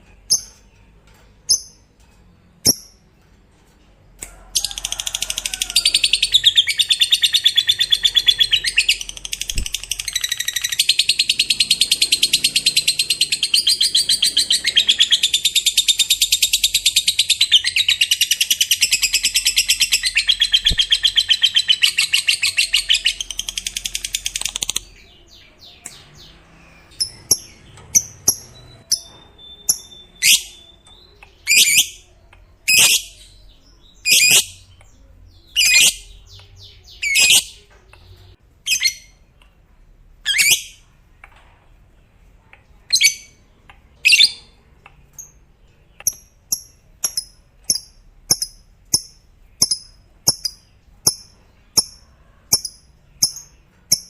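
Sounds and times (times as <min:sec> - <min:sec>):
bird chirps and squeaks: 0:18.4 - 0:24.8, 0:26.7 - 0:30.8, 0:35.6 - 0:36.1, 0:37.0 - 0:37.7, 0:40.3 - 0:40.8
lovebird high-pitched trill: 0:26.8 - 0:32.0.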